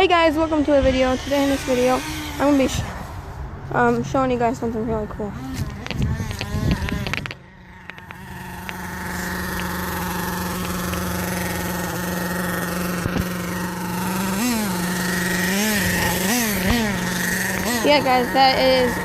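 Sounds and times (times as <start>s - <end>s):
small gas engine idling: 5.1s - 19.0s.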